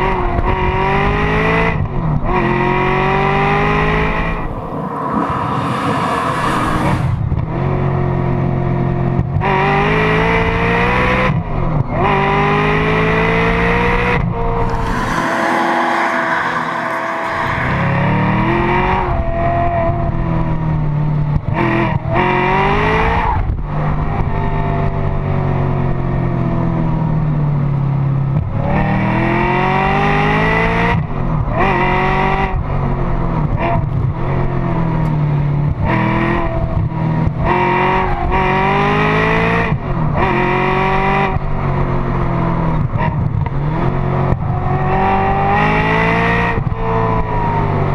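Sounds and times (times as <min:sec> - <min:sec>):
car engine revving hard: 0:14.6 - 0:18.9.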